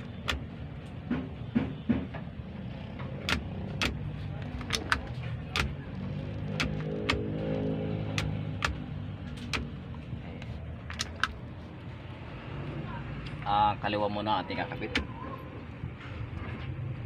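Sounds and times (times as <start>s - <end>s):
switches clicking: 3.2s - 5.8s, 8.1s - 8.8s.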